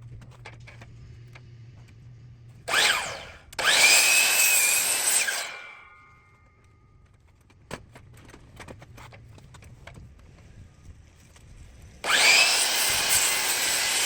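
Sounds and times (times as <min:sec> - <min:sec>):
miter saw cutting wood: 0:02.7 - 0:06.5, 0:12.0 - 0:14.0.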